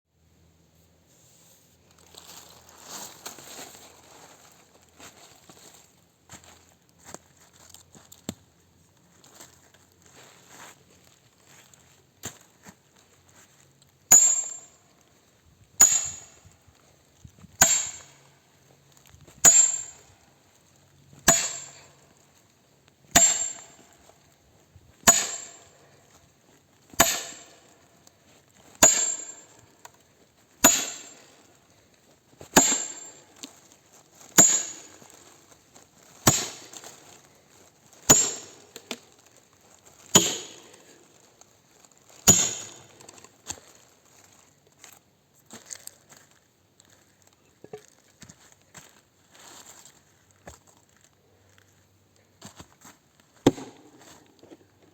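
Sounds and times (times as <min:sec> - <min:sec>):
wood splitting blows with ring: 0:14.1 - 0:14.8, 0:15.8 - 0:16.5, 0:17.6 - 0:18.2, 0:19.4 - 0:20.1, 0:21.2 - 0:22.0, 0:23.1 - 0:24.1, 0:25.0 - 0:26.0, 0:26.9 - 0:27.8, 0:28.6 - 0:30.0, 0:30.6 - 0:31.5, 0:32.4 - 0:35.3, 0:36.2 - 0:37.2, 0:38.0 - 0:39.2, 0:40.2 - 0:41.0, 0:42.2 - 0:43.3, 0:53.4 - 0:54.6.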